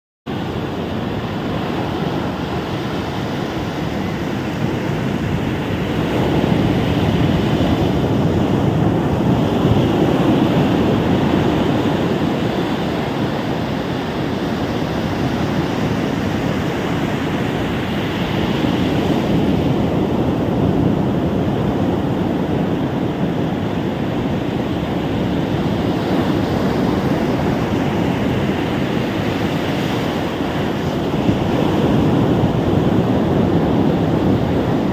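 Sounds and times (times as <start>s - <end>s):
ocean waves breaking: 0.3s - 34.9s
wind on microphone: 0.3s - 34.9s.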